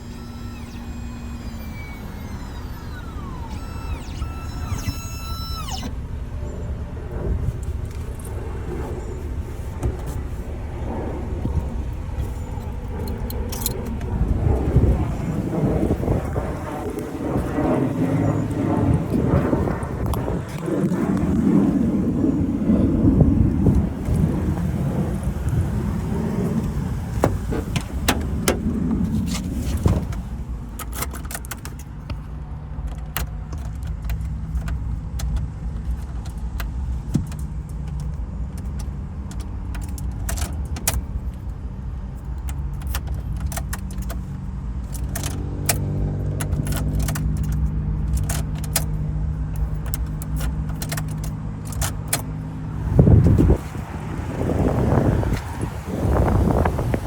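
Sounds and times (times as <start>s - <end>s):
low mechanical hum: 0.0s - 57.0s
keys and metal tools jangling: 12.3s - 13.9s.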